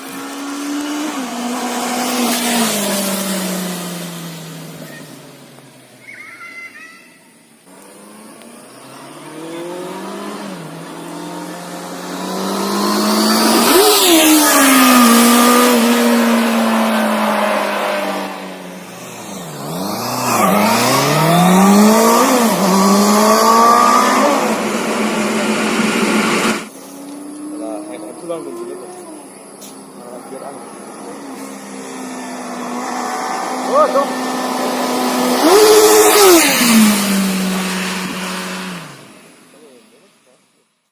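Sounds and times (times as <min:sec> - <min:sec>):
motorcycle engine revving: 0:00.0 - 0:05.8, 0:07.7 - 0:39.8
motorcycle engine passing by: 0:30.1 - 0:39.3.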